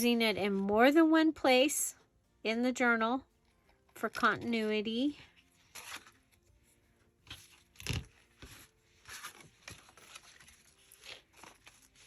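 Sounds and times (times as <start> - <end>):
paper and fabric rustling: 4.0 - 12.0.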